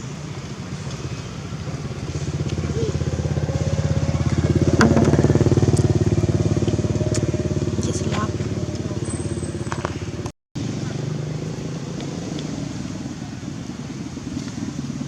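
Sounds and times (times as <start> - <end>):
small engine running: 0.7 - 14.9.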